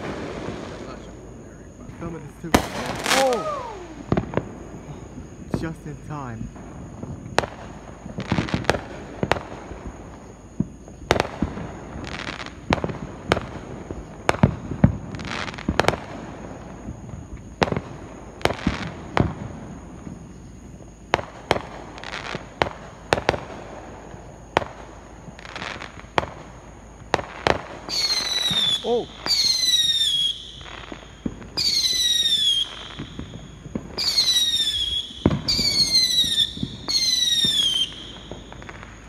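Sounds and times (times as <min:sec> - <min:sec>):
fireworks bangs: 0:00.0 - 0:39.0
fireworks noisy bursts: 0:00.0 - 0:39.0.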